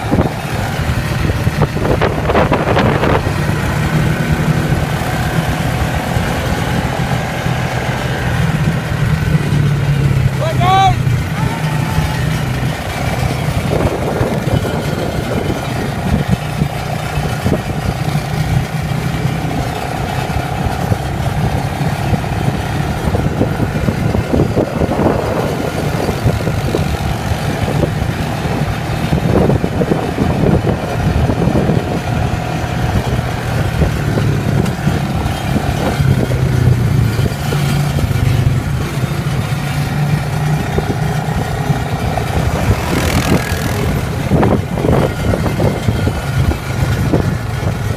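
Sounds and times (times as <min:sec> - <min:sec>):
quad bike engine running: 0:00.0 - 0:47.9.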